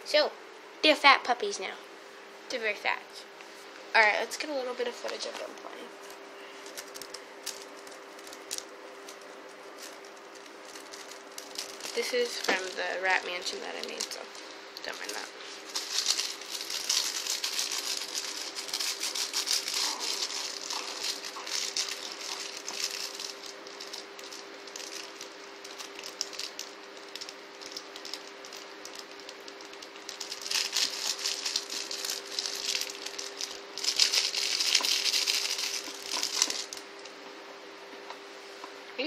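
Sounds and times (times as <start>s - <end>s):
steady low hum: 0.0s - 39.0s
puppies rattling and clattering: 15.1s - 36.8s.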